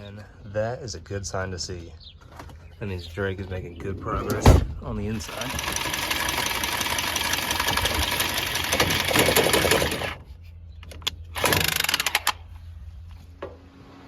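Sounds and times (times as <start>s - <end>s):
power tool motor running: 5.2s - 10.2s, 11.4s - 12.4s.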